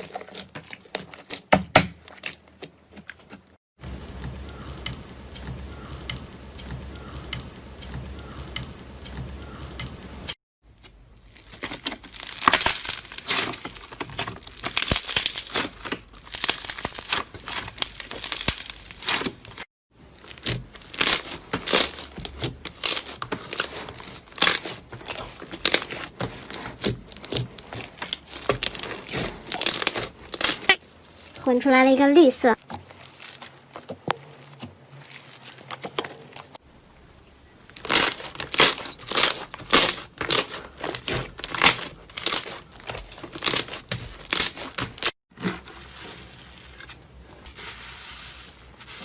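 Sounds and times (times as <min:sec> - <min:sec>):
slime crackling by hand: 0:11.0 - 0:32.0, 0:37.7 - 0:46.8.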